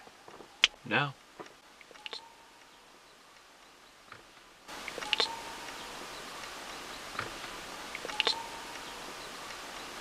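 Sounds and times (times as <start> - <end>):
background hiss: 0.0 - 10.0.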